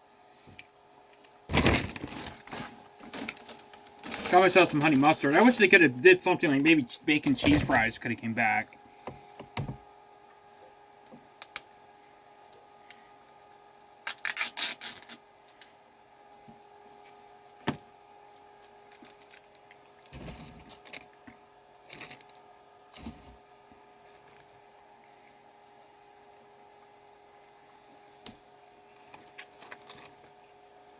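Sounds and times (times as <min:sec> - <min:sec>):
air conditioner humming: 0:00.0 - 0:30.9
food packaging clicks and crinkles: 0:00.6 - 0:05.6, 0:11.4 - 0:11.8, 0:13.8 - 0:15.8, 0:18.6 - 0:22.4, 0:29.0 - 0:30.6.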